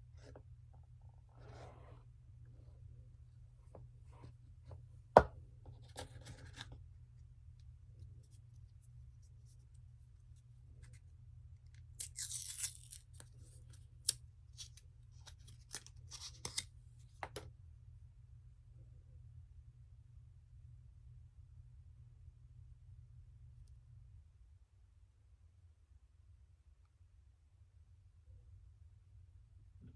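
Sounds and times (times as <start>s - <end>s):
paper tearing: 12.0s - 13.2s.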